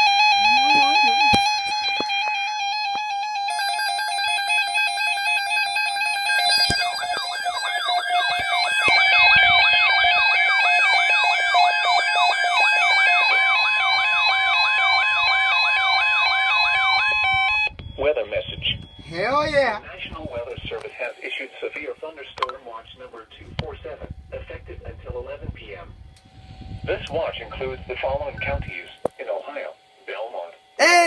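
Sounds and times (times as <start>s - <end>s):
siren sweep rising and falling: 0.0s - 17.7s
two-pitch electronic alarm tone: 0.0s - 20.1s.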